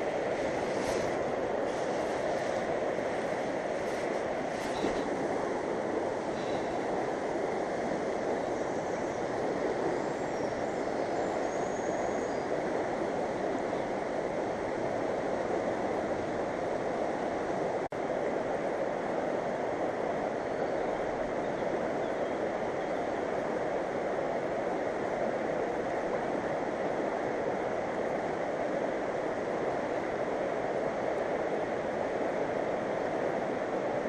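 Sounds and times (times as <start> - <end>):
fast-flowing river rushing: 0.0 - 9.9.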